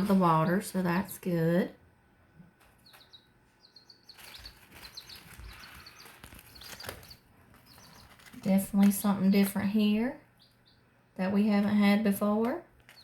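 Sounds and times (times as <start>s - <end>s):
baby chicks peeping: 2.4s - 13.0s
soft rustling: 4.1s - 9.0s.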